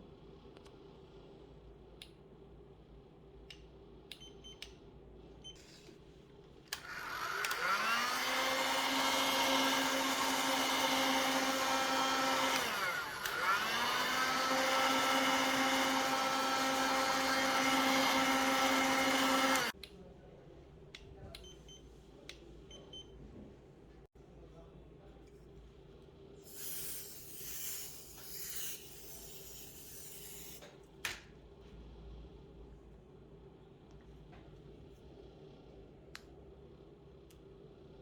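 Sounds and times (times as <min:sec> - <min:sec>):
small electric motor whining: 0:06.8 - 0:19.8, 0:26.4 - 0:30.6.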